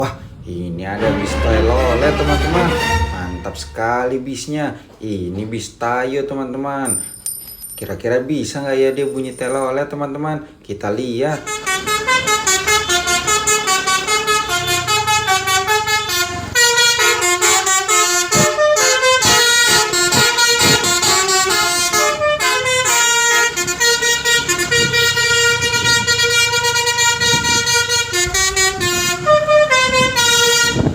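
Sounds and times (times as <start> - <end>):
musical multi-tone bus horn: 0.9 - 4.1, 11.6 - 30.9.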